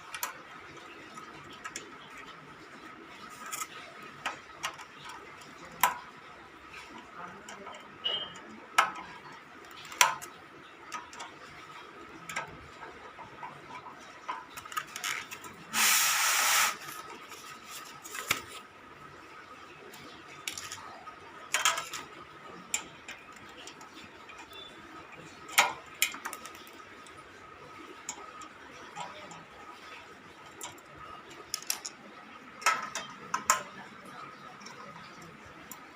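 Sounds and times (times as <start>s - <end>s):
loud hiss burst: 15.7s - 16.9s
metal parts and tools clicking: 20.0s - 27.2s, 30.4s - 33.8s.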